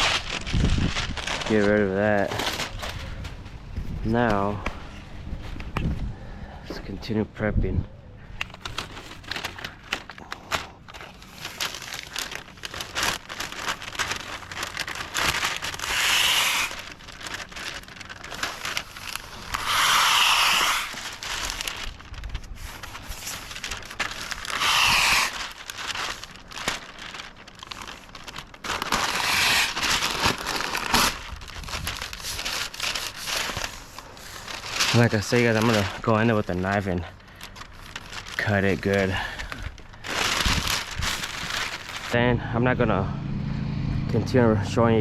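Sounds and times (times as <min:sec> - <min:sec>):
paper and tape crinkling: 0:00.0 - 0:06.0, 0:08.2 - 0:42.3
tape rasps: 0:19.3 - 0:21.3, 0:24.4 - 0:25.9.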